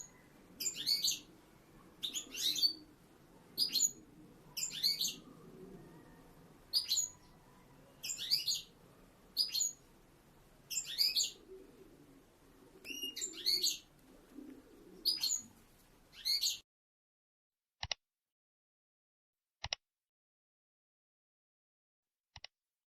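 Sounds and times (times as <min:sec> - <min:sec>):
goldfinch twittering chirps: 0:00.0 - 0:01.3, 0:08.0 - 0:08.7, 0:10.7 - 0:11.4.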